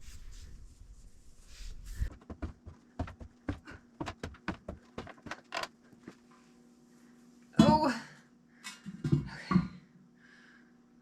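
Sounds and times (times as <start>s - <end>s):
pet footfalls on stairs: 2.1s - 5.7s.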